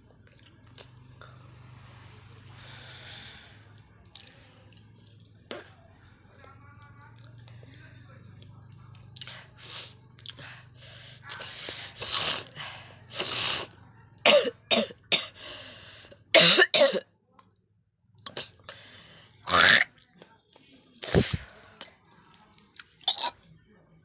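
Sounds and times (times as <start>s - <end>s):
person clearing throat: 14.3s - 15.4s, 16.4s - 17.0s
person coughing: 14.3s - 15.5s, 16.4s - 17.0s.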